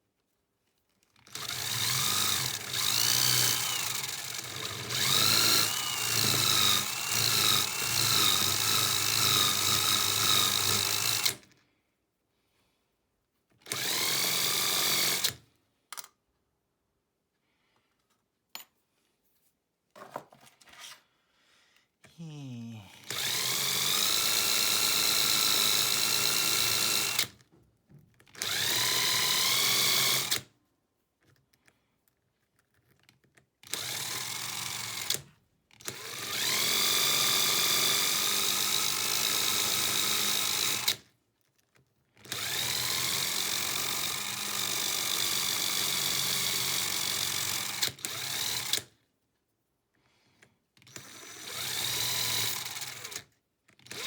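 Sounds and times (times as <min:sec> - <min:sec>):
electric polishing tool whining: 0:01.9 - 0:08.0.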